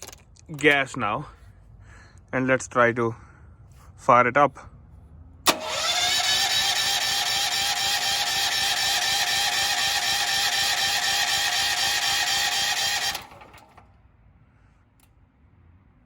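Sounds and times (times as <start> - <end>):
generator starter cranking: 5.5 - 14.0.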